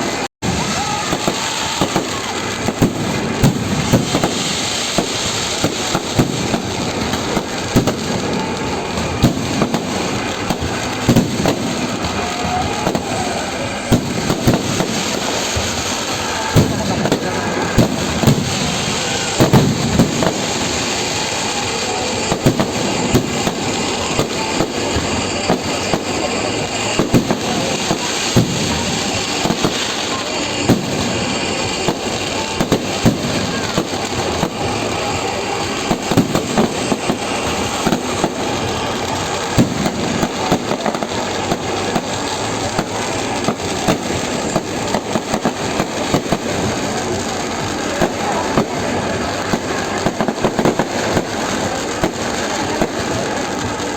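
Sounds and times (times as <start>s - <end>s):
fireworks crackling and banging: 0.0s - 53.9s
loud firework reports: 0.0s - 53.9s.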